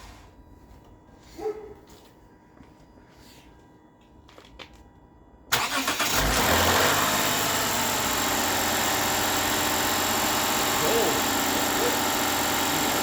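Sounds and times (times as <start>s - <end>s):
car engine starting and idling: 5.5s - 13.0s.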